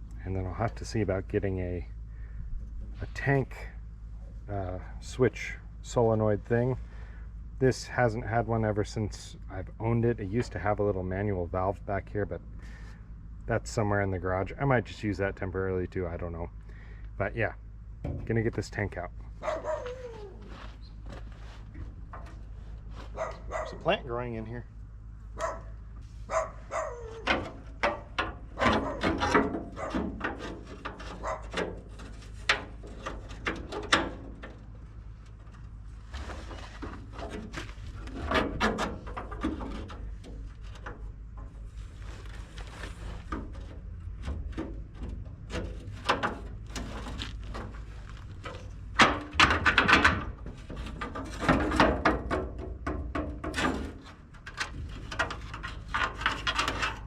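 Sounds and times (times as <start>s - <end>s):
steady low hum: 0.0s - 57.0s
hand tools knocking and scraping: 18.0s - 23.8s, 26.3s - 57.0s.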